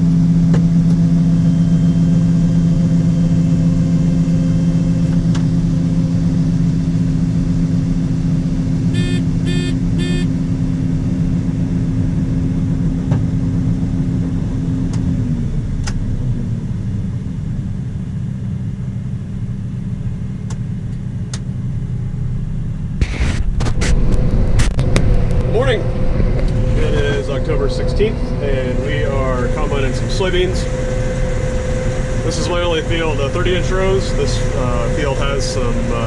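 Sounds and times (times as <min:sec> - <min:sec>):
combine engine drone: 0:00.0 - 0:36.0
higher steady tone: 0:08.8 - 0:10.9, 0:22.0 - 0:35.8
short electronic beeps: 0:08.9 - 0:10.3.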